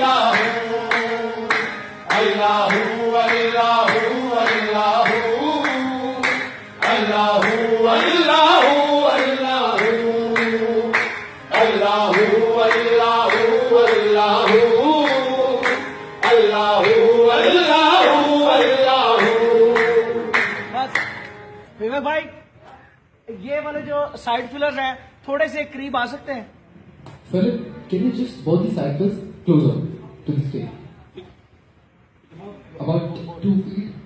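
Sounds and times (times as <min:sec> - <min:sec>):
male voices singing: 0:00.0 - 0:20.7
rhythmic hand claps: 0:00.0 - 0:21.4.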